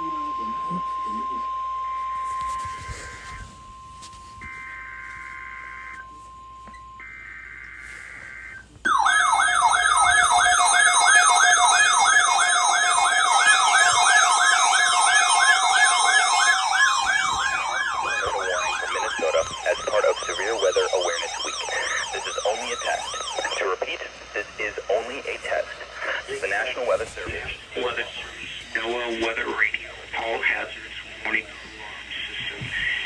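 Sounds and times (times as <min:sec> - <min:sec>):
warbling siren alarm tones: 0:00.0 - 0:29.3
screechy digital data tones: 0:06.6 - 0:26.6.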